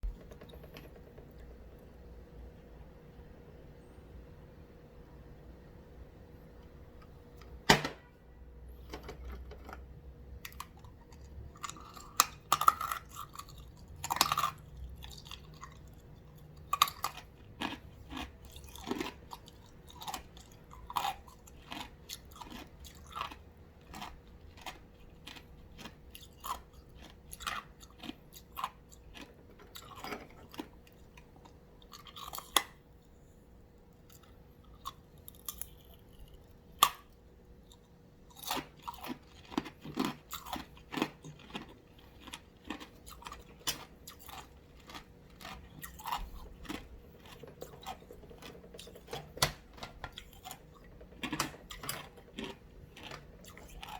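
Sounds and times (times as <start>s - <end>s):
ice being chewed: 10.5s - 32.8s, 34.0s - 53.9s.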